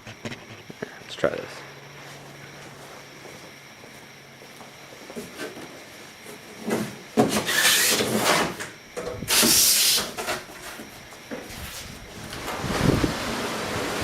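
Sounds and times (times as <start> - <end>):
loud scraping and rustling: 6.5 - 8.7, 9.3 - 14.0.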